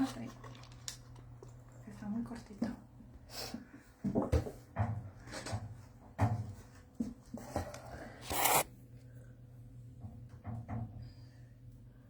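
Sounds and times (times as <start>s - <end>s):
loud scrape on microphone: 8.2s - 8.6s.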